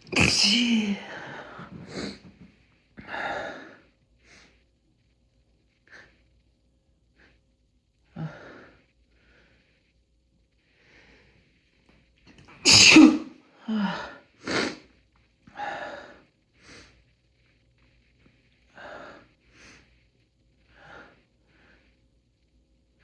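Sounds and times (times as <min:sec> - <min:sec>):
man sneezing loudly: 0:00.1 - 0:01.1, 0:12.6 - 0:13.3.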